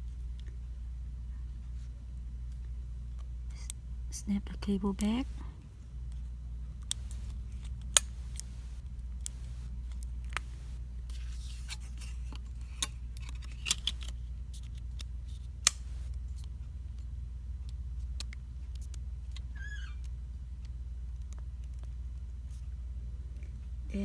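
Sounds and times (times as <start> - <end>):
low hum: 0.0 - 13.4
small parts clicking and tapping: 11.8 - 21.9.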